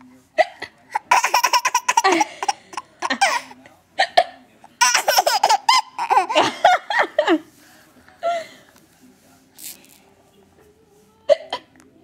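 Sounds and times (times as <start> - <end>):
baby laughing: 0.9 - 3.6, 4.8 - 7.0.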